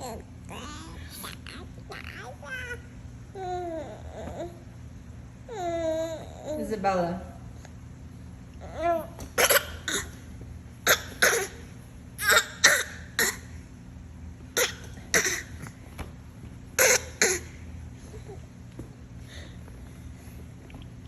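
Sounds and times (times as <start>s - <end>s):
baby vocal sound: 8.6s - 10.2s
baby pretend coughing: 8.8s - 10.2s, 10.8s - 13.5s, 14.6s - 15.8s, 16.8s - 17.6s.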